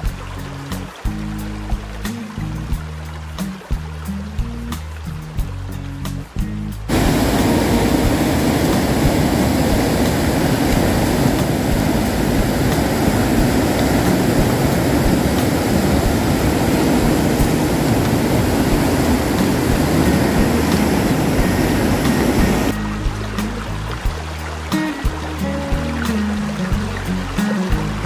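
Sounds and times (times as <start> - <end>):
loud rushing rumbling noise: 6.9 - 22.8.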